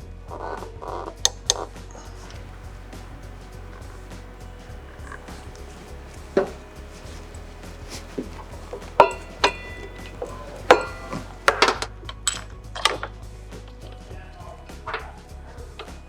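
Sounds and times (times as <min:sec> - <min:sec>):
background music: 0:02.2 - 0:12.4
metal tools clinking on metal: 0:02.3 - 0:11.8.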